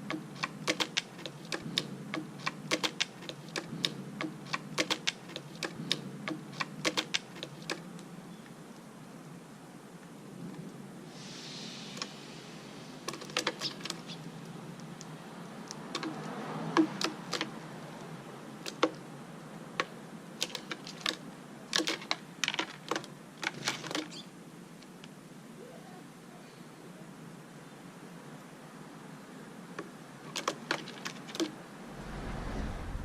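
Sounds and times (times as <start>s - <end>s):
brief hiss: 11.1s - 13.2s.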